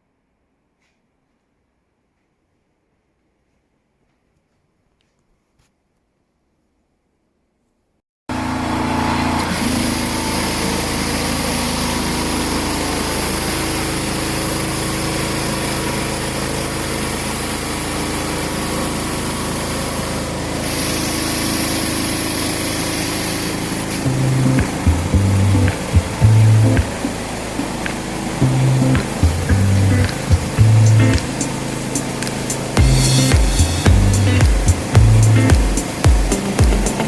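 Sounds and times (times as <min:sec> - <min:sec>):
pressure washer engine running: 0:08.3 - 0:37.0
water spraying hiss: 0:09.7 - 0:37.0.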